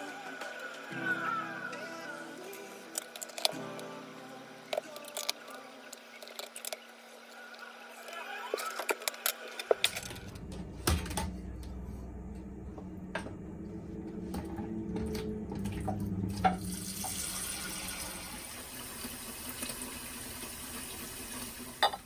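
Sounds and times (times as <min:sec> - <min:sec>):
tap water running into sink: 0:12.4 - 0:22.0.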